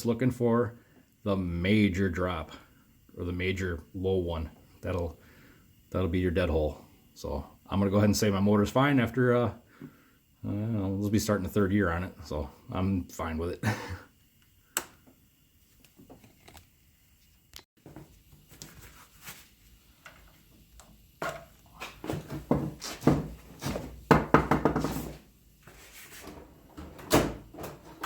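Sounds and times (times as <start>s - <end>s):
hard objects knocking and clattering: 21.2s - 25.2s.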